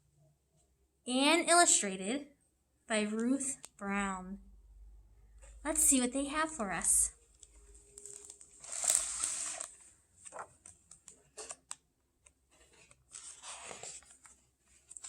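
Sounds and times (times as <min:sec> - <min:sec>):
paper pages rustling: 0:07.4 - 0:15.0.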